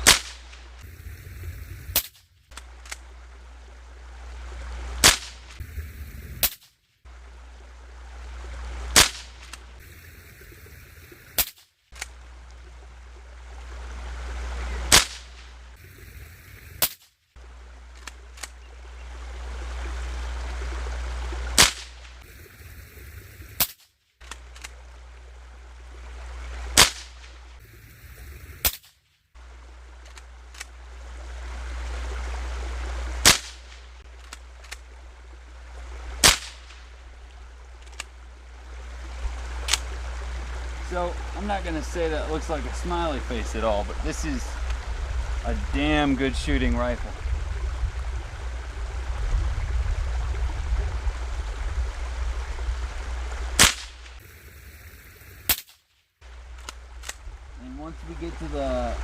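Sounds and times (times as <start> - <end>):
rifle shots: 0.0 - 0.6, 5.0 - 6.7, 21.6 - 22.0, 26.8 - 27.3, 33.2 - 33.8, 36.2 - 36.8, 53.6 - 54.2
background hiss: 0.0 - 47.1, 52.4 - 59.0
rifle action clicks: 18.0 - 18.6, 23.6 - 24.8, 30.0 - 30.7, 34.2 - 34.8, 37.8 - 38.1, 56.5 - 57.2.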